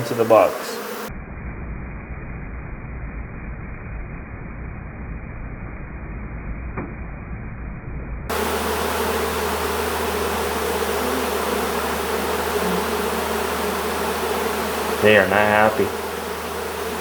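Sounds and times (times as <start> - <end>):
honeybees buzzing: 0.0 - 1.1, 8.3 - 17.0
muffled low noise: 1.1 - 8.3.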